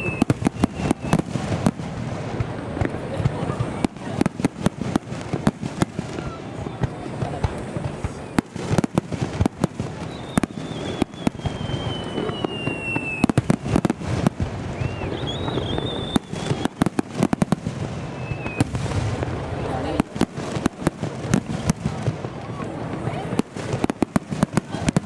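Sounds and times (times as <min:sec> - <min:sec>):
firework whistle gliding down: 0:00.0 - 0:01.3, 0:10.0 - 0:13.8, 0:14.6 - 0:16.9, 0:18.0 - 0:18.8
fireworks bursting: 0:00.0 - 0:25.0.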